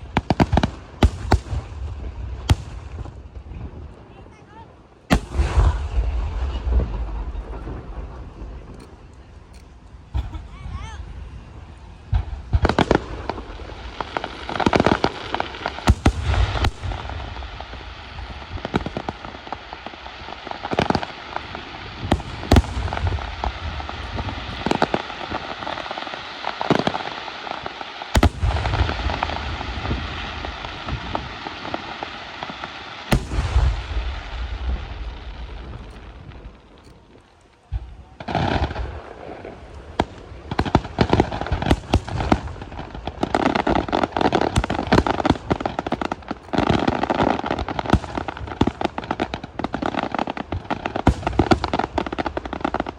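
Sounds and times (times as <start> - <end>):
fireworks hissing: 5.1 - 37.2, 38.2 - 52.9
firework shells bursting: 33.1 - 37.3.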